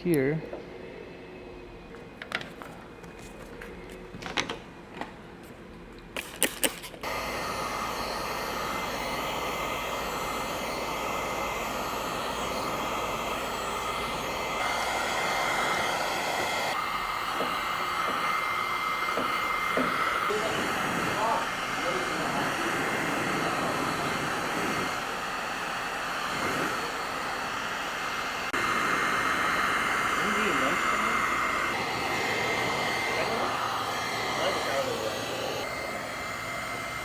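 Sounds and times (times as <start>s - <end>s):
heat gun blowing: 6.2s - 37.0s.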